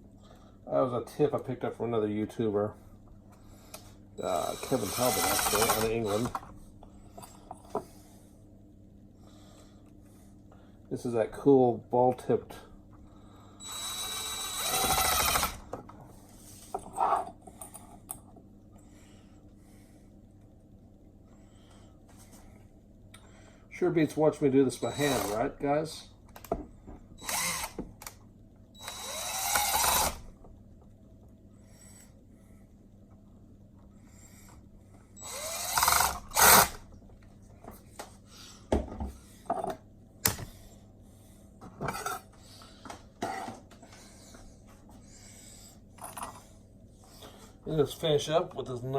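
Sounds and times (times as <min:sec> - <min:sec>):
power screwdriver driving screw: 0:04.4 - 0:06.4, 0:13.6 - 0:15.6, 0:24.9 - 0:25.4, 0:27.2 - 0:27.8, 0:28.8 - 0:30.2, 0:35.2 - 0:36.8.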